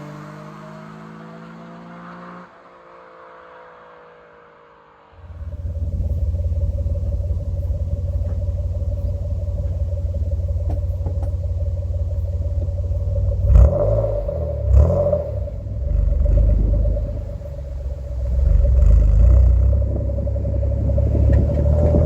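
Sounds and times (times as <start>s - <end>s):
car exhaust rumble: 5.2s - 22.0s
engine throttle blips: 5.2s - 22.0s.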